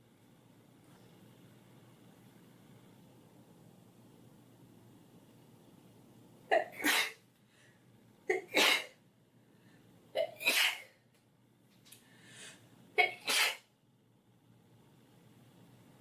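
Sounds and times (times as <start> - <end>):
girl sneezing: 6.5 - 7.2, 10.2 - 11.0, 13.0 - 13.7.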